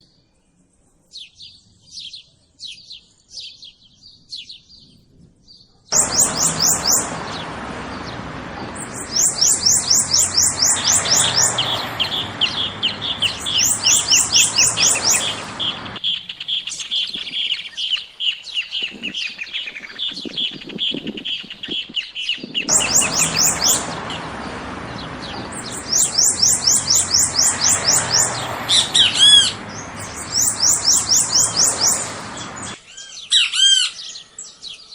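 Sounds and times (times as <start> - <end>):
songbirds singing: 1.1 - 34.9
steady background noise: 5.9 - 16.8, 22.7 - 32.8.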